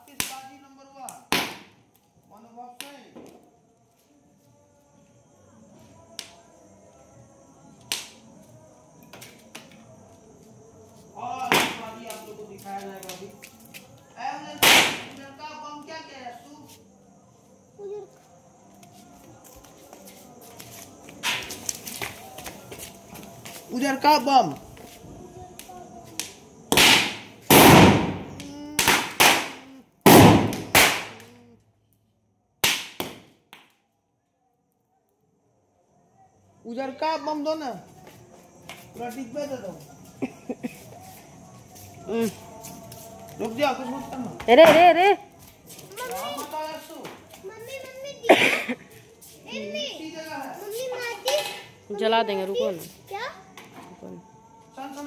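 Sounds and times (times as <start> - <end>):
firecrackers bursting: 0.0 - 1.9, 11.4 - 13.3, 14.5 - 15.4, 21.2 - 22.2, 25.5 - 31.3, 32.6 - 33.7.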